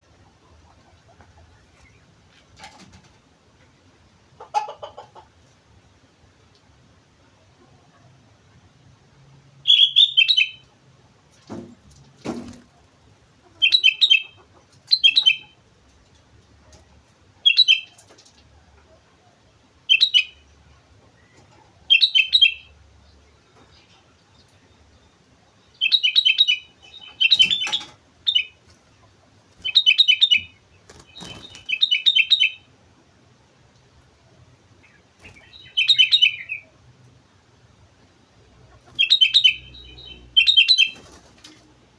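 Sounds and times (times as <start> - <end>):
bird singing: 9.7 - 10.7, 13.6 - 15.6, 21.2 - 28.6, 29.6 - 32.7, 34.8 - 36.8, 38.8 - 41.2.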